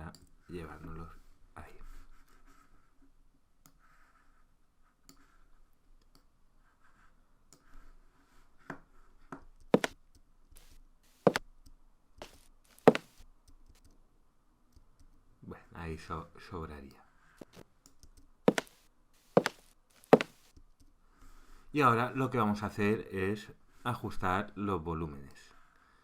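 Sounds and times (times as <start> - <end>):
faint mouse clicks: 3.6 - 3.8, 6.0 - 6.3, 7.5 - 7.7, 17.8 - 18.3
footsteps: 9.8 - 10.0, 11.2 - 11.4, 12.2 - 13.2, 18.5 - 20.5.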